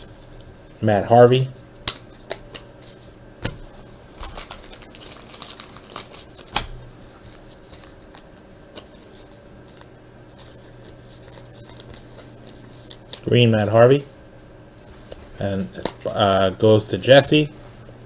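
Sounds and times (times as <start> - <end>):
foil wrapper crinkling: 4.1 - 13.8.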